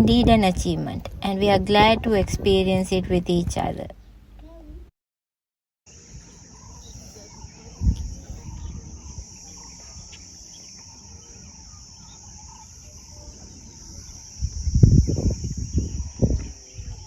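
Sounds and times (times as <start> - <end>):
low buffeting: 0.0 - 4.9, 6.0 - 17.0
high-pitched insect drone: 5.9 - 17.0.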